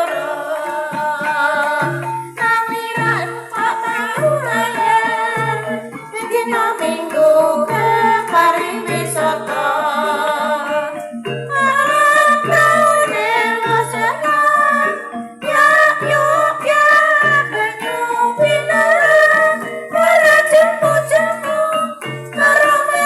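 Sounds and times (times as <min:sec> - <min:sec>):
gamelan accompaniment: 0:00.0 - 0:23.0
woman singing: 0:00.0 - 0:23.0.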